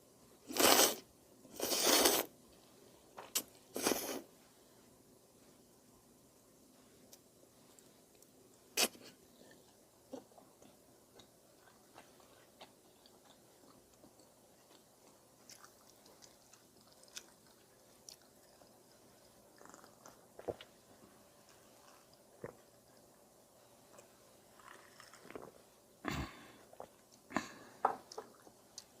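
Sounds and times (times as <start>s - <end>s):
quiet chewing of noodles: 6.7s - 29.0s.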